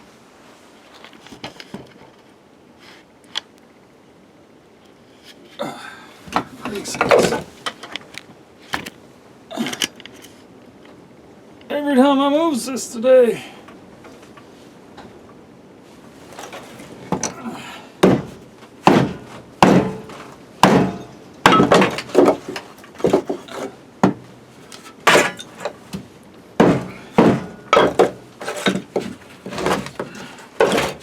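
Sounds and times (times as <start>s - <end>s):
axe splitting firewood: 16.3s - 31.0s.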